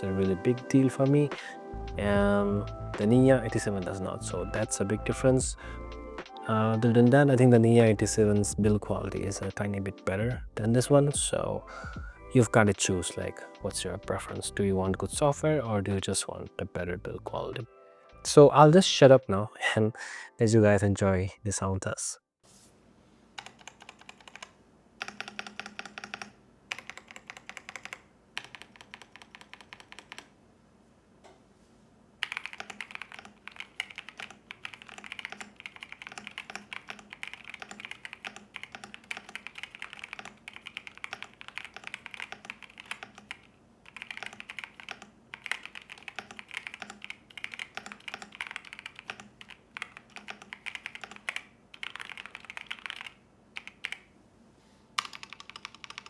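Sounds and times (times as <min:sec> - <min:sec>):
mechanical keyboard typing: 0:23.4 - 0:30.4, 0:32.2 - 0:54.1, 0:55.0 - 0:56.0.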